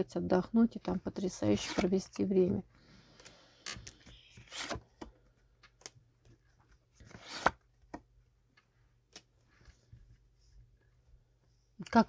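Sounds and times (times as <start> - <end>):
cards rustling on a table: 3.2 - 7.6.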